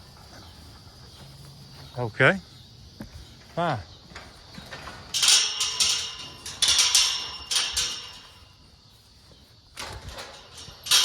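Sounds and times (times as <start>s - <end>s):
metal gate rattling and clanging: 3.6s - 8.9s, 9.7s - 11.0s.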